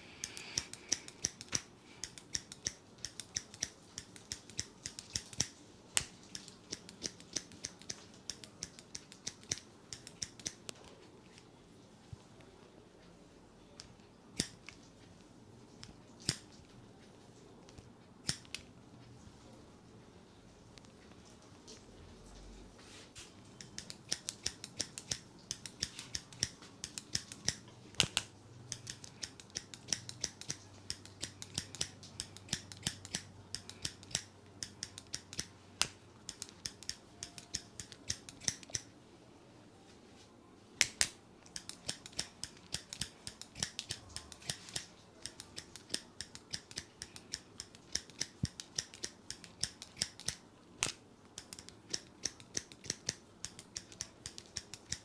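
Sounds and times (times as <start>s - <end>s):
scissors snipping hair: 0.2s - 10.8s, 14.4s - 14.8s, 16.2s - 16.6s, 18.2s - 18.6s, 23.5s - 38.9s, 40.8s - 55.0s.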